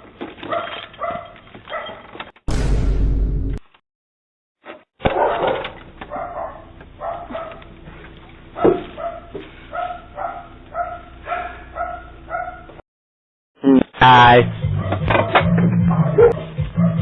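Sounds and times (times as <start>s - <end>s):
dog barking: 0.4s - 2.1s, 5.0s - 7.7s, 8.5s - 12.8s, 14.6s - 17.0s.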